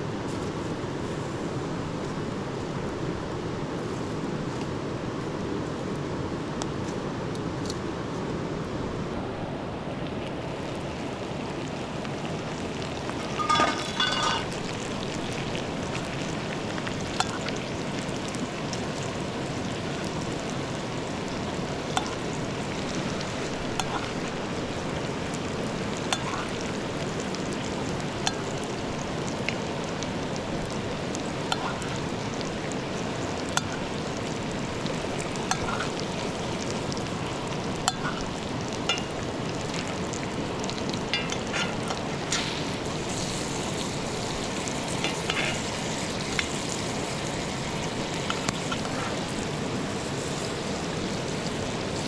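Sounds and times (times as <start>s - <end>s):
chicken sizzling in a pan: 10.5s - 52.0s
utensil clattering on pan: 13.3s - 14.6s.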